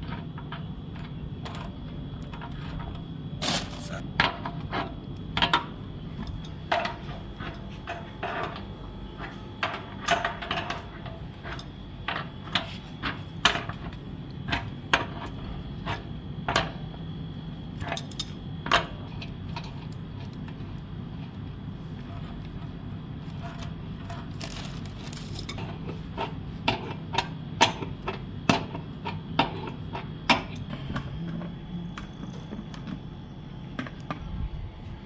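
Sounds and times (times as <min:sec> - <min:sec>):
tools and metal parts clinking: 0:00.0 - 0:16.6, 0:17.8 - 0:20.6, 0:23.2 - 0:28.2
steady low hum: 0:00.0 - 0:35.0.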